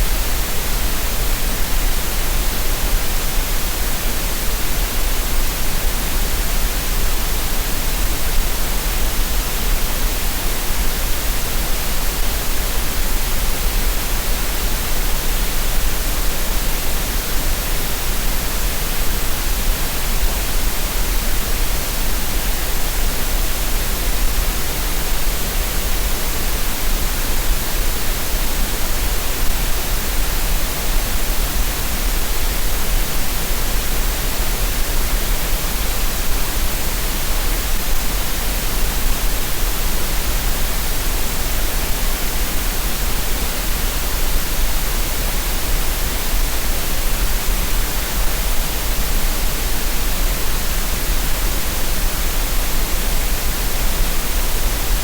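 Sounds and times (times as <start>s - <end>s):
green noise hiss with low rumble: 0.0s - 55.0s.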